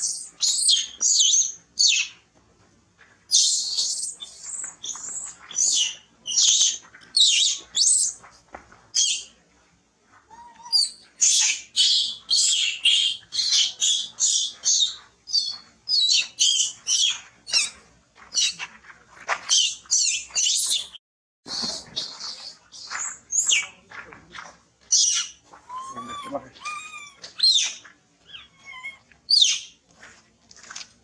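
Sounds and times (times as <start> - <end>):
monkey squealing calls: 25.0 - 29.6.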